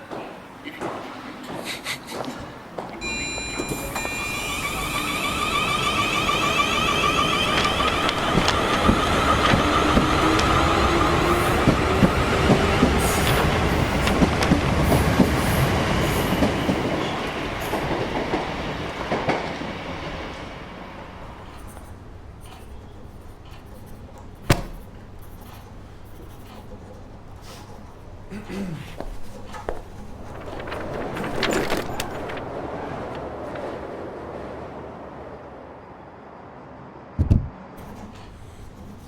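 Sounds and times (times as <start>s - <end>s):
train clattering along rails: 0.1s - 23.7s
wheels squealing: 3.0s - 21.8s.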